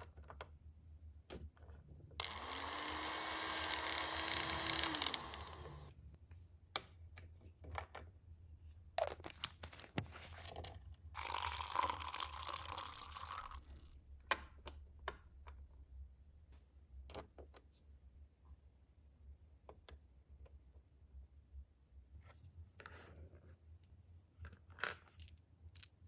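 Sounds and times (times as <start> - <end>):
steady whirring noise: 2.2 - 5.9.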